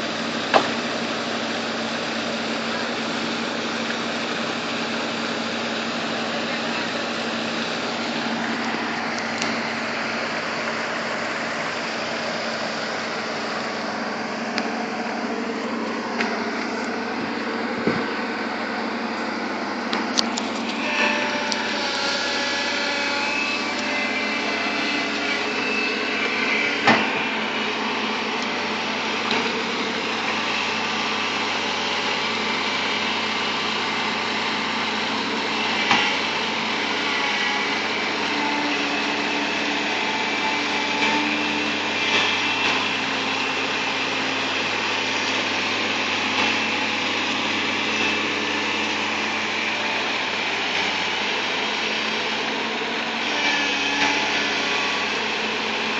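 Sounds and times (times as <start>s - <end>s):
bulldozer engine running: 0.0s - 55.9s.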